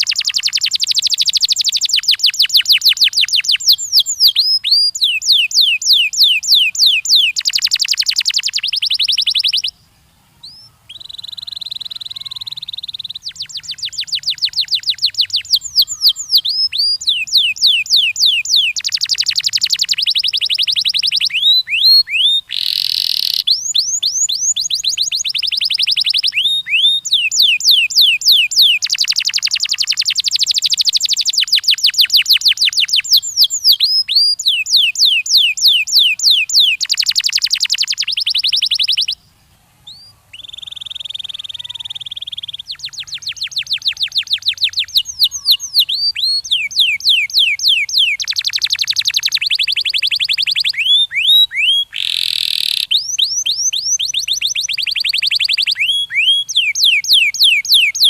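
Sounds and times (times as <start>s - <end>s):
canary singing trills: 0.0s - 58.0s.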